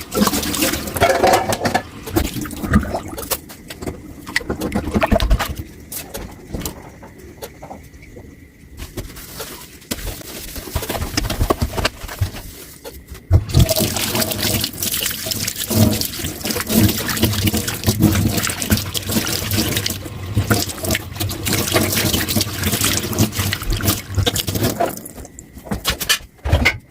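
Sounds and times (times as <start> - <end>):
tap water running into sink: 13.3 - 25.2.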